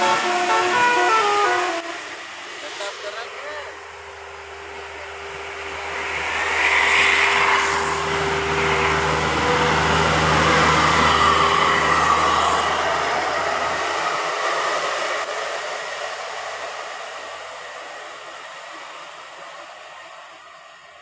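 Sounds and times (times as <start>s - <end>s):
bus driving past: 0.0s - 21.0s.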